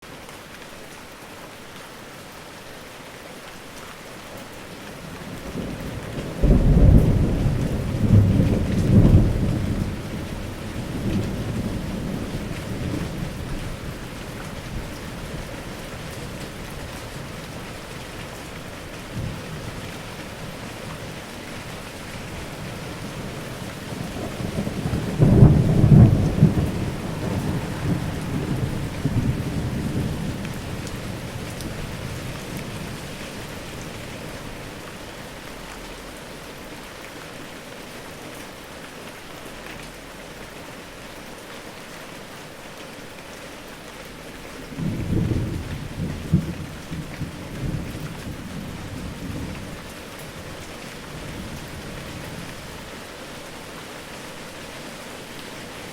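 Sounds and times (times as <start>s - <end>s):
steady rain falling: 0.0s - 55.9s
thunder rumble: 5.2s - 34.8s, 44.7s - 49.8s.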